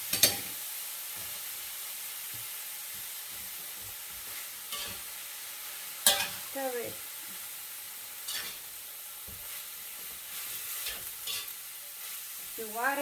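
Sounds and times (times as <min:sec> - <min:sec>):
food sizzling in a hot pan: 0:00.0 - 0:13.0
spatula scraping a pan: 0:03.3 - 0:05.2, 0:06.0 - 0:06.5, 0:08.2 - 0:12.7.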